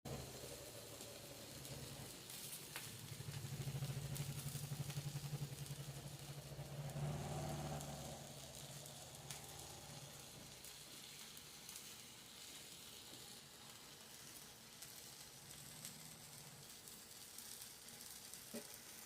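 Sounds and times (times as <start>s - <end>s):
fish sizzling on a grill: 0.1s - 19.0s.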